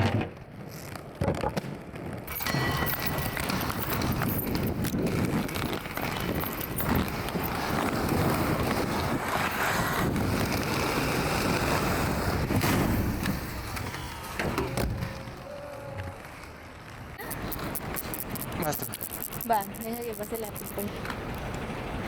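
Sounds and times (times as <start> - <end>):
wheels rolling over pavement: 0.0 - 22.0.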